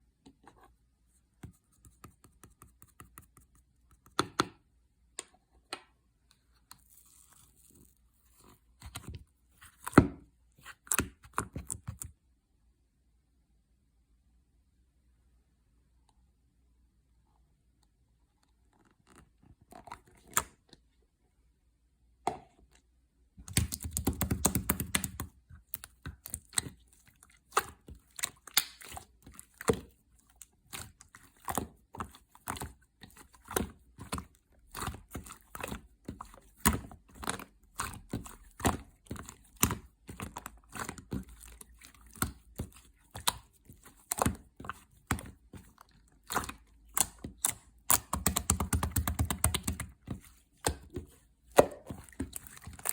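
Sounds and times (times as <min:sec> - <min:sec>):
slime squishing with sticky clicks: 0:06.6 - 0:12.2, 0:23.4 - 0:52.9.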